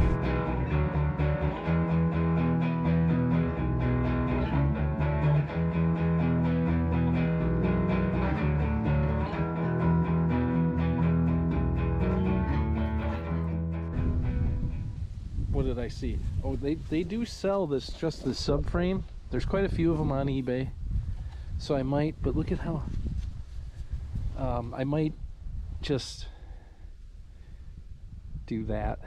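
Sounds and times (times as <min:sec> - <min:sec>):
electric guitar and bass music: 0:00.0 - 0:15.1.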